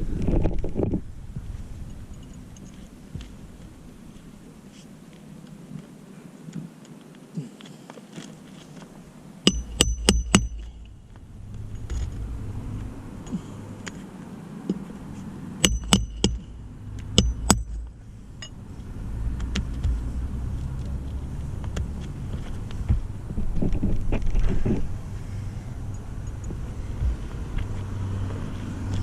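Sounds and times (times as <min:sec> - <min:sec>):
sharp ringing clinks: 0:09.5 - 0:11.0, 0:11.7 - 0:12.2, 0:15.6 - 0:16.5, 0:17.2 - 0:18.6
low rumble: 0:26.2 - 0:29.0.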